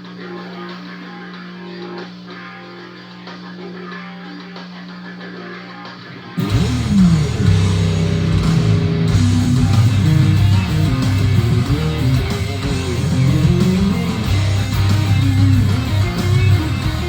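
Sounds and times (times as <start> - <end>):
heavy metal electric guitar: 0.0 - 17.0.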